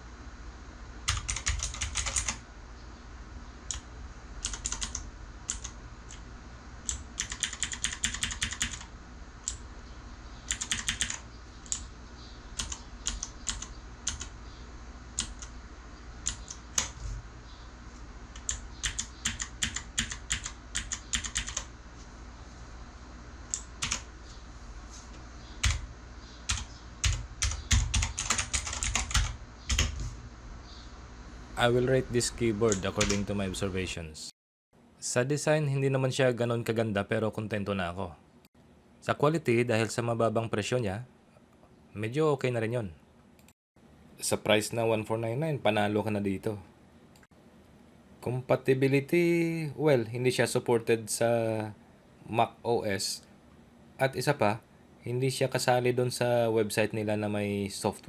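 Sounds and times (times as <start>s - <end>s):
mechanical keyboard clicking: 1.1s - 2.4s, 4.4s - 5.7s, 6.9s - 8.9s, 10.5s - 11.8s.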